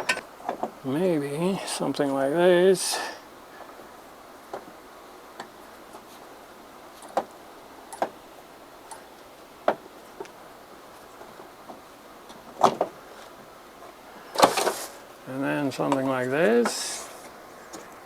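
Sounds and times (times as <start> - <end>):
hand tools clicking and knocking: 0.0 - 0.8, 15.7 - 18.0.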